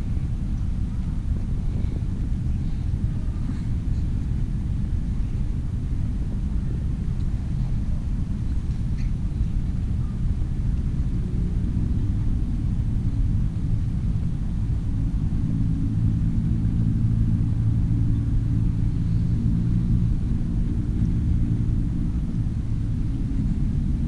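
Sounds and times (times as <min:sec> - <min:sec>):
outdoor rumble: 0:00.0 - 0:24.0
engine drone passing: 0:09.4 - 0:24.0.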